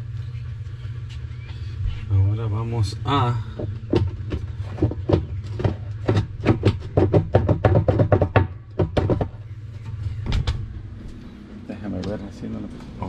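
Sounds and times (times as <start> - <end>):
steady low hum: 0.0 - 13.0
knocking on machine parts: 3.5 - 9.4.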